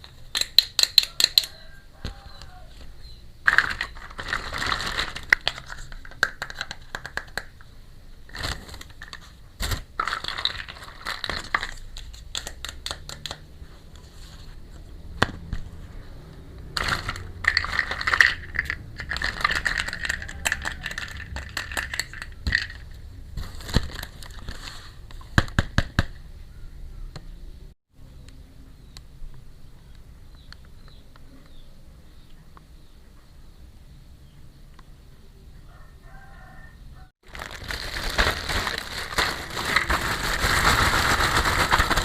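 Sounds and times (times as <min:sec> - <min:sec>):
plastic toy pieces clicking: 0:00.3 - 0:01.5, 0:03.5 - 0:07.6, 0:10.0 - 0:13.4, 0:16.8 - 0:22.9
plastic packaging crinkling: 0:03.5 - 0:07.5, 0:08.2 - 0:13.4, 0:16.8 - 0:25.0, 0:37.2 - 0:42.0.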